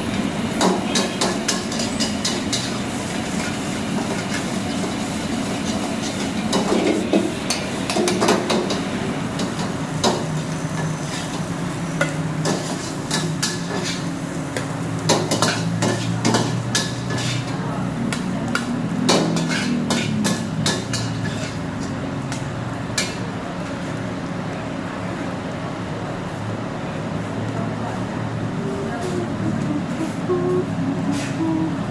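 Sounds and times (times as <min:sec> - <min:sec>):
metal spatula scraping a wok: 0:00.9 - 0:08.2, 0:10.2 - 0:22.0.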